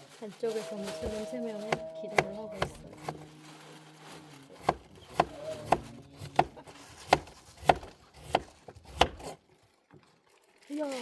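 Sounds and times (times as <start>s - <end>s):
knife chopping on cutting board: 1.7s - 3.2s, 4.6s - 9.4s.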